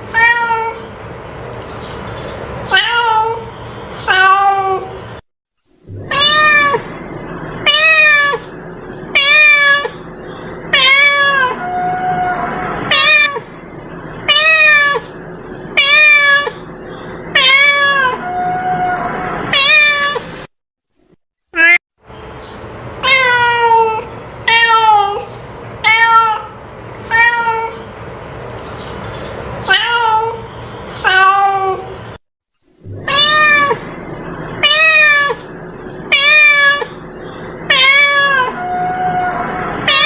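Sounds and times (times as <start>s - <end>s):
cat meowing: 0.1s - 0.9s, 2.7s - 3.5s, 4.1s - 5.0s, 6.0s - 7.0s, 7.6s - 8.5s, 9.1s - 10.0s, 10.7s - 13.5s, 14.3s - 15.2s, 15.8s - 16.7s, 17.3s - 20.3s, 21.6s - 21.8s, 23.0s - 27.9s, 29.7s - 31.9s, 32.9s - 33.9s, 34.6s - 35.5s, 36.1s - 37.0s, 37.6s - 40.0s.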